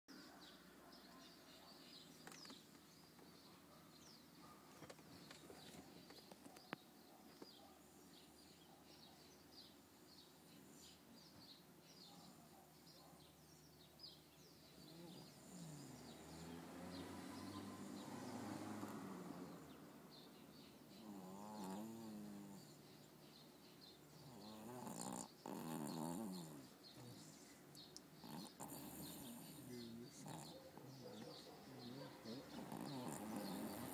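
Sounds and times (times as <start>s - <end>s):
birds chirping: 0.1s - 33.9s
baby snoring softly: 21.0s - 22.7s, 24.2s - 27.4s, 28.3s - 30.5s, 32.5s - 33.9s.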